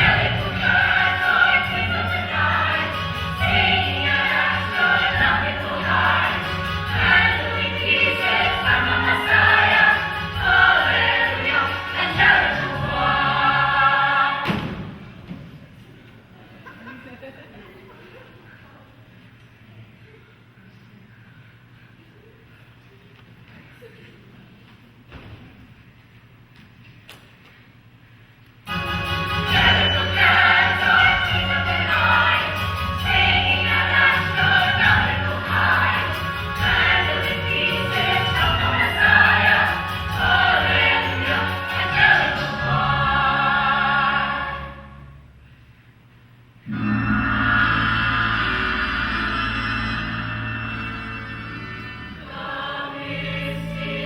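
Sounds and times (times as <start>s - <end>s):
chorus singing with accompaniment: 0.0s - 15.5s, 28.7s - 45.2s, 46.7s - 54.0s.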